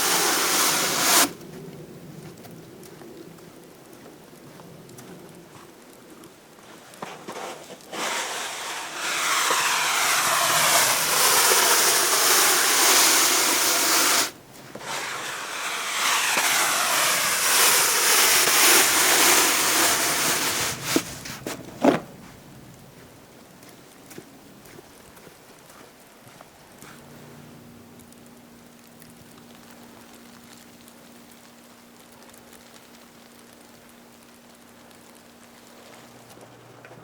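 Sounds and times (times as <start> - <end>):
snow shovel scraping: 0.0 - 1.4, 6.7 - 21.6.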